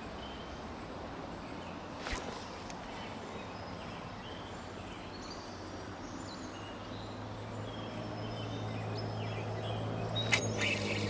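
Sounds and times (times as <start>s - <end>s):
small birds chirping: 9.0s - 11.0s
sharp click: 10.2s - 11.0s.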